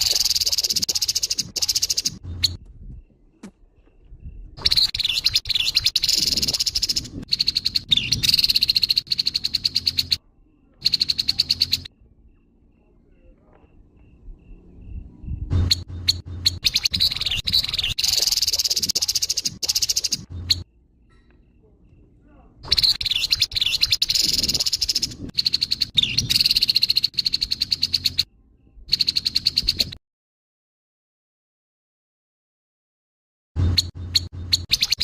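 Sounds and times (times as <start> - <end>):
bird harsh rapid chattering: 0.0 - 2.6, 4.6 - 10.2, 10.8 - 11.9, 15.6 - 20.7, 22.6 - 28.3, 28.9 - 30.0, 33.7 - 35.0.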